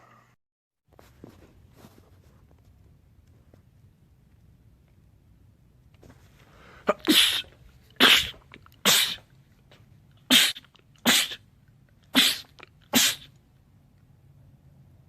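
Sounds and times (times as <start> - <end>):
man sneezing: 6.8 - 9.3, 10.3 - 11.4, 12.1 - 13.3.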